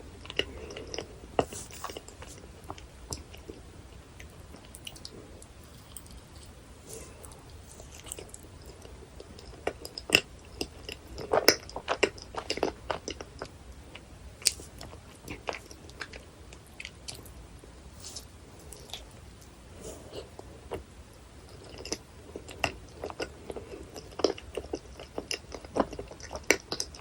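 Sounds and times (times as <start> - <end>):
close chewing: 4.2 - 17.4, 21.4 - 27.0.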